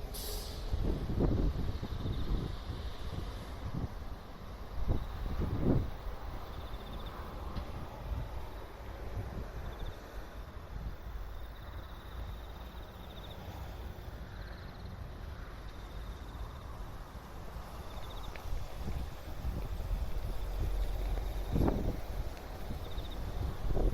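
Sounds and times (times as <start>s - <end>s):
insects trilling: 4.8s - 8.8s, 9.6s - 23.9s
steady low rumble: 14.5s - 23.9s.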